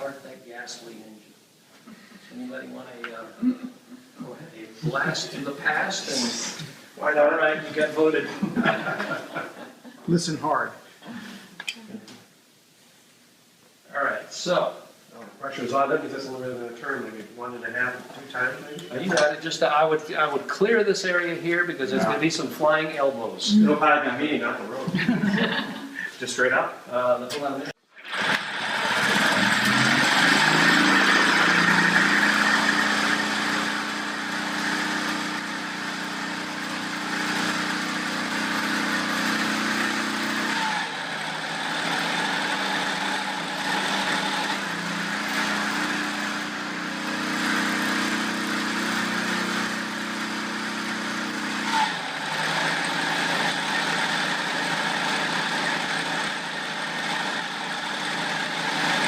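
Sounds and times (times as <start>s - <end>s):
hand-cranked gasoline engine running: 28.1s - 59.0s.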